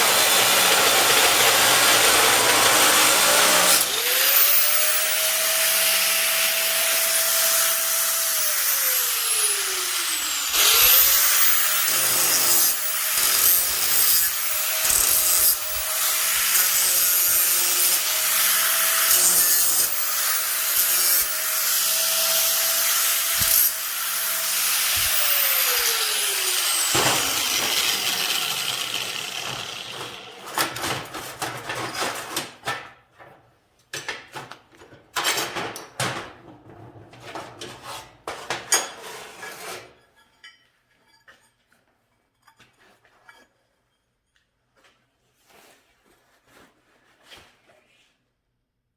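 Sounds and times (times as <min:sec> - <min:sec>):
electric grinder grinding steel: 0:00.0 - 0:31.0.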